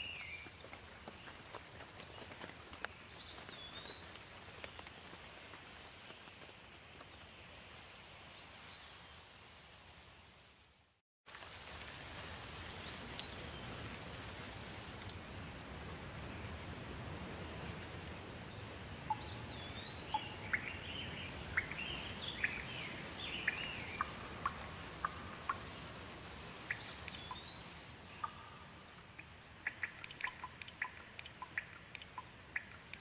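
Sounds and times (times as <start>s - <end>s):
steady rain: 0.0s - 33.0s
birds calling: 18.3s - 26.0s, 26.6s - 33.0s
water drops ticking: 28.2s - 33.0s.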